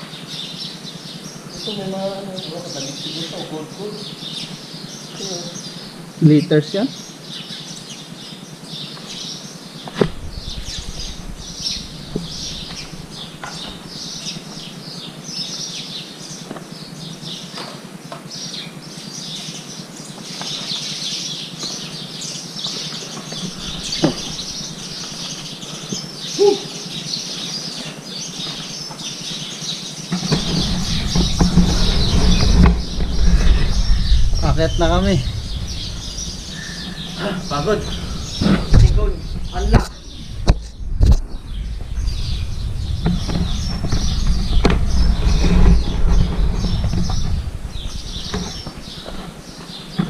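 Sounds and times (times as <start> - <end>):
birds chirping: 0.0 - 50.0
low rumble on microphone: 9.9 - 15.2, 23.4 - 26.5, 30.1 - 50.0.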